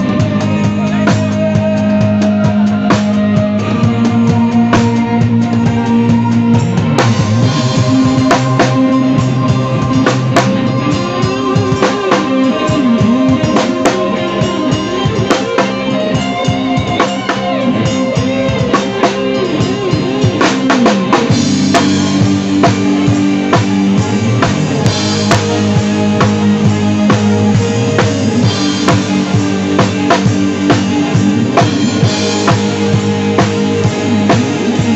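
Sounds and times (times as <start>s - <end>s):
bending lead melody: 0.0s - 34.9s
sustained keyboard and bass: 0.0s - 34.9s
drum kit kick and snare: 15.1s - 34.9s.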